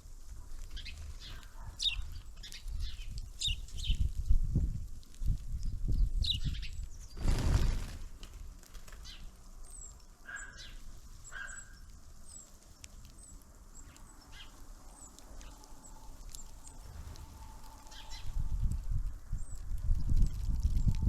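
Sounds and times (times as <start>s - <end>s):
small birds calling: 0.4s - 4.2s, 5.5s - 20.9s.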